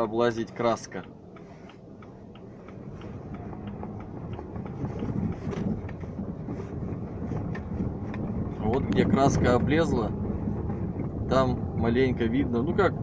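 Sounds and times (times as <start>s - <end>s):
light regular ticking: 0.0s - 9.8s
road and engine rumble in car: 0.0s - 13.0s.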